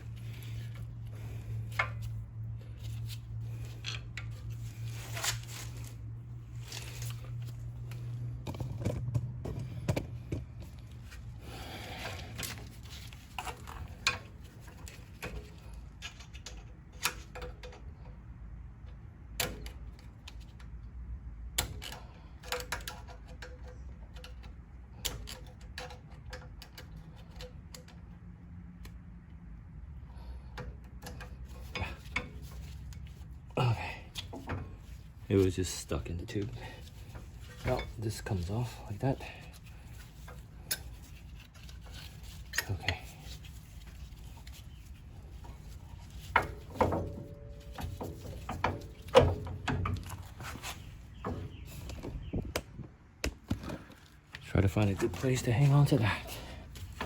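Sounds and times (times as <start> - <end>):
low steady hum: 0.0 - 57.0
tools clicking on metal parts: 21.6 - 28.2, 36.3 - 50.3.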